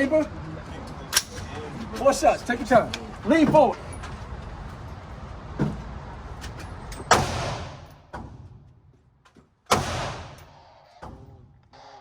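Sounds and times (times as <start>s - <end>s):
loud gunshots with echo: 7.1s - 7.9s, 9.7s - 10.7s.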